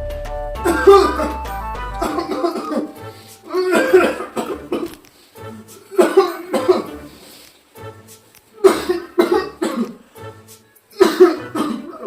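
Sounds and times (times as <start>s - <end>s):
background music: 0.0s - 12.0s
person coughing: 0.6s - 1.4s, 2.0s - 5.0s, 5.9s - 7.0s, 8.6s - 10.0s, 11.0s - 12.0s.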